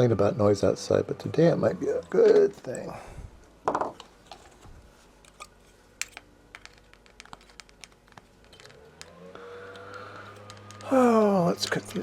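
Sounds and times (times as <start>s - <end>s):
clicks and taps of small tools: 6.0s - 11.0s.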